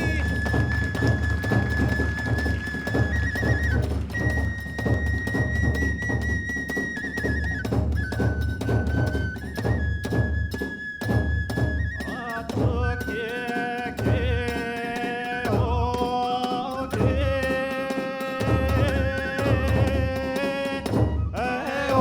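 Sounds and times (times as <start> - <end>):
deep drum beating: 0.0 - 6.5, 18.5 - 22.0.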